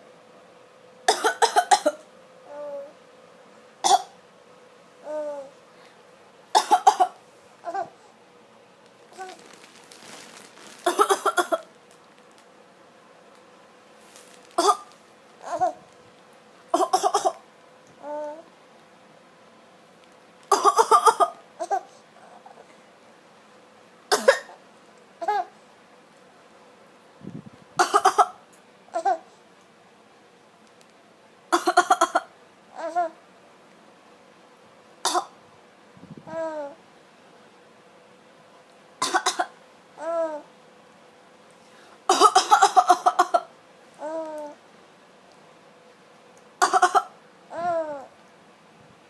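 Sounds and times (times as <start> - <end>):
person coughing: 1.1 - 2.0, 6.6 - 7.2, 10.8 - 11.7, 14.6 - 14.9, 16.8 - 17.4, 20.5 - 21.8, 24.1 - 24.6, 27.8 - 28.4, 39.0 - 39.5, 42.1 - 43.5, 46.6 - 47.1.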